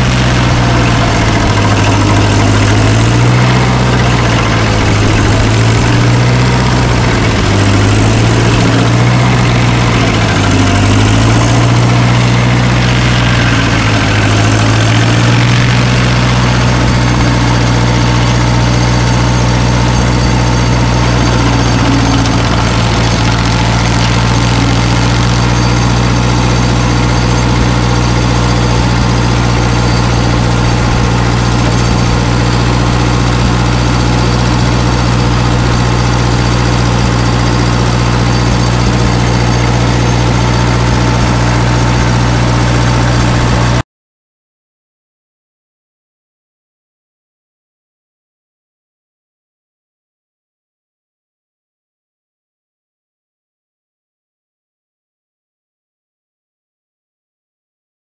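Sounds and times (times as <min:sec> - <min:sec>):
work machine engine running: 0:00.0 - 0:43.8.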